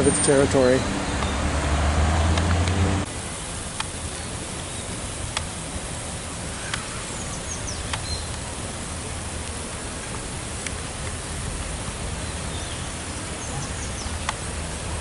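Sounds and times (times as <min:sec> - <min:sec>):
low traffic rumble: 0:00.0 - 0:15.0
sharp clicks: 0:02.3 - 0:02.8, 0:07.8 - 0:08.4
steady hiss: 0:02.5 - 0:15.0
faint high bird chirps: 0:06.6 - 0:08.4.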